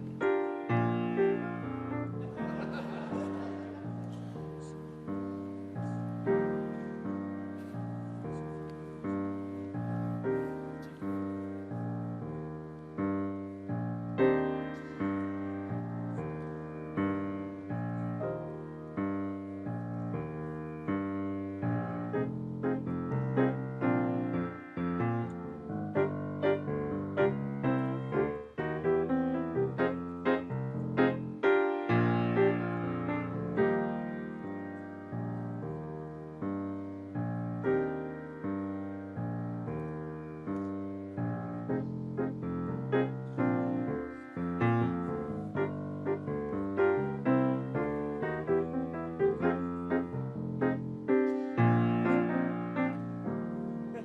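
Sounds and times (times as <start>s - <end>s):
piano music: 0.0s - 54.0s.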